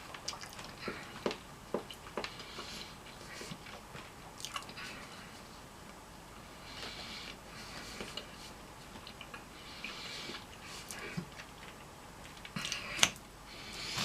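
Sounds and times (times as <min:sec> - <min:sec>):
chewing and biting food: 0:00.2 - 0:04.8.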